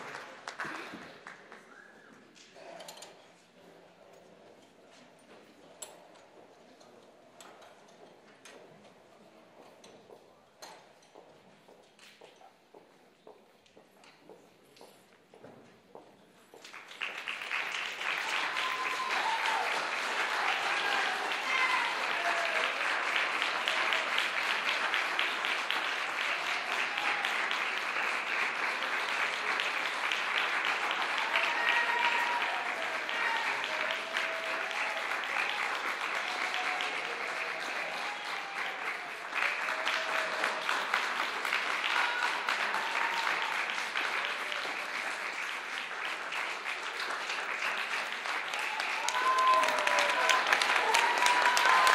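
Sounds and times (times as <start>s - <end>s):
audience applauding: 0.0s - 2.0s, 16.6s - 51.9s.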